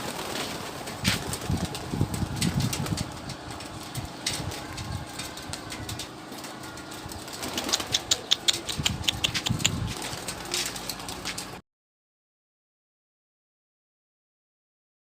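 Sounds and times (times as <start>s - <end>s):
pigeons cooing: 0.0s - 11.6s
sharp clicks and taps: 7.7s - 11.4s.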